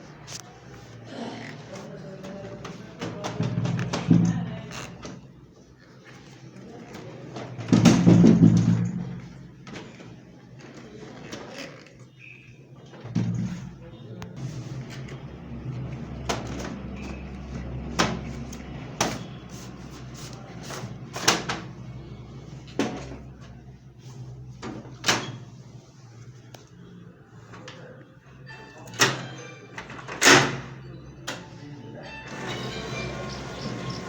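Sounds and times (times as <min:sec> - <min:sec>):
copier humming: 0:00.0 - 0:34.0
copier clacks and knocks: 0:02.2 - 0:05.3, 0:07.0 - 0:10.2, 0:14.9 - 0:22.0, 0:32.3 - 0:34.0.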